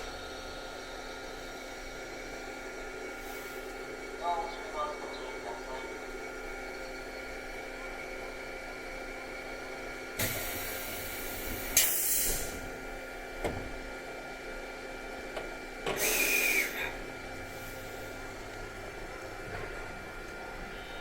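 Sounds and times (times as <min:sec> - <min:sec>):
train equipment high hum: 0:00.0 - 0:21.0
compressed air hissing: 0:10.2 - 0:12.6, 0:15.9 - 0:17.0.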